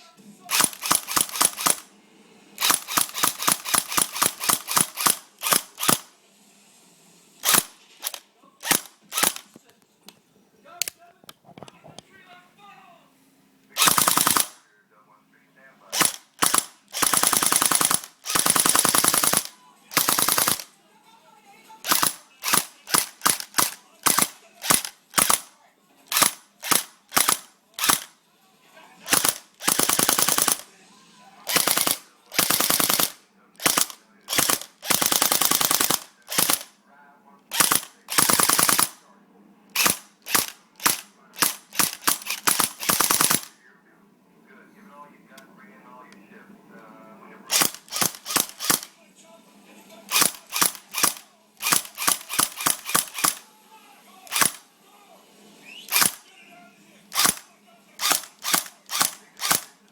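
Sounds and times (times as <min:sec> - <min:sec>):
airsoft rifle automatic bursts: 0:00.5 - 0:01.9, 0:02.6 - 0:06.1, 0:07.4 - 0:09.5, 0:13.8 - 0:14.6, 0:15.9 - 0:20.7, 0:21.8 - 0:25.5, 0:26.1 - 0:28.1, 0:29.1 - 0:30.7, 0:31.5 - 0:36.7, 0:37.5 - 0:39.0, 0:39.8 - 0:43.5, 0:47.5 - 0:49.0, 0:50.1 - 0:53.4, 0:54.3 - 0:54.7, 0:55.8 - 0:56.3, 0:57.1 - 0:59.9.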